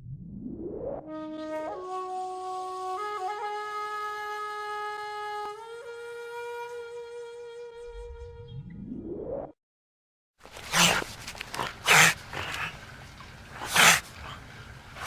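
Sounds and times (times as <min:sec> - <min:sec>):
held wind instrument note: 0:01.0 - 0:08.6.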